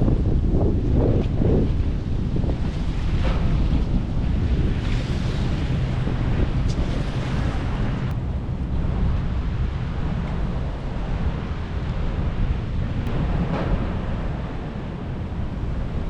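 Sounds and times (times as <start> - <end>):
low rumble: 0.0 - 16.0
rushing water: 0.0 - 16.0
wind buffeting microphone: 0.0 - 16.0.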